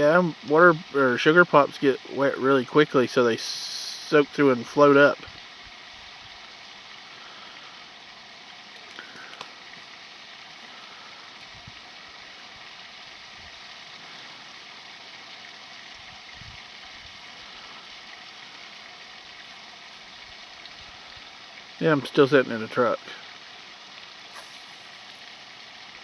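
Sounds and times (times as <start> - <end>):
steady hissing noise: 0.0 - 26.0
faint clicks: 8.8 - 9.6.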